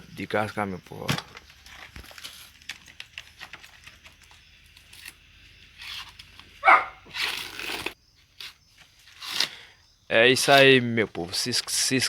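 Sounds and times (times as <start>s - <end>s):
corn husks crackling: 0.2s - 12.0s
dog barking: 6.6s - 7.0s.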